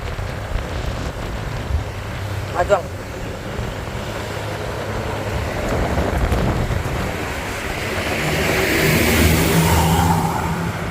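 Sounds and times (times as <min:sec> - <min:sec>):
traffic rumble: 0:00.0 - 0:10.9
vehicle approaching: 0:00.0 - 0:10.9.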